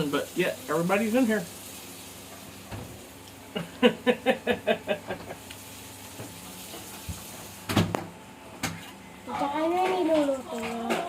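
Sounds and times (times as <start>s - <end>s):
eggs sizzling in a frying pan: 0.0s - 8.5s
person laughing: 3.5s - 5.4s.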